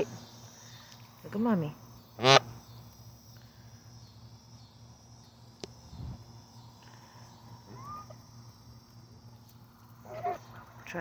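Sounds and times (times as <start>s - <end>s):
steady low hum: 0.0s - 11.0s
faint rising chirp: 3.6s - 11.0s.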